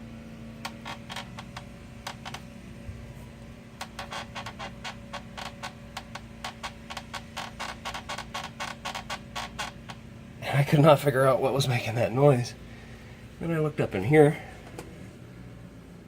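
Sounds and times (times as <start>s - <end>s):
steady low hum: 0.0s - 16.0s
creaking clicks from car underside: 0.6s - 2.5s, 3.8s - 10.0s.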